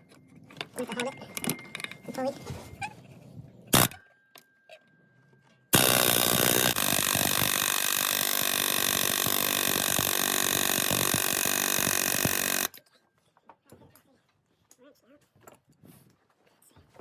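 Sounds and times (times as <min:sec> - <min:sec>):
air impact wrench rattling: 0:05.8 - 0:12.8.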